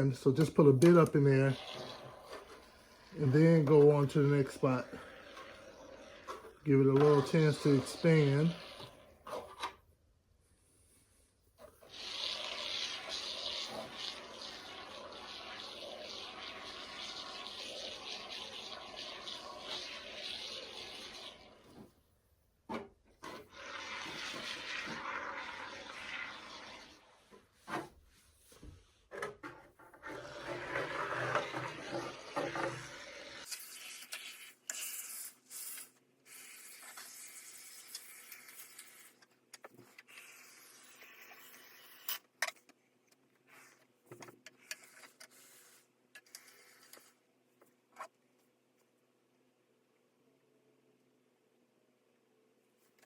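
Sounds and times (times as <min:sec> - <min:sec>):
spray foam can hissing: 0:11.8 - 0:21.6.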